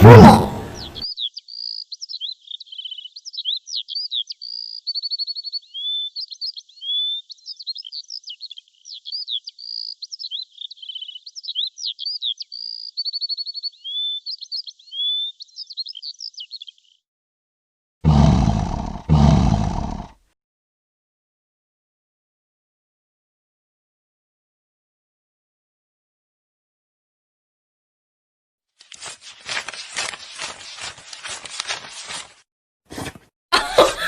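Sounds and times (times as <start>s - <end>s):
tiger roars: 0.0s - 0.8s, 18.0s - 20.2s
songbird chirping and trilling: 0.6s - 17.0s.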